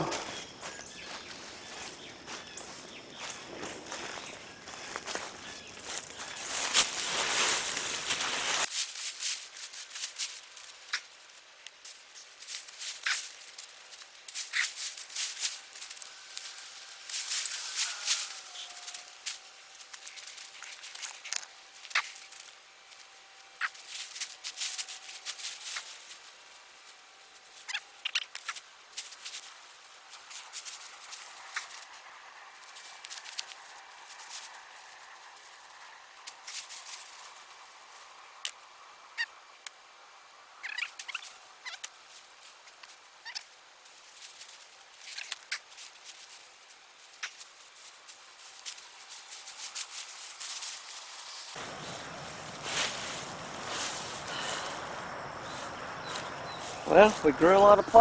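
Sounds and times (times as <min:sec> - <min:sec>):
hands digging through soil: 0:05.0 - 0:22.6.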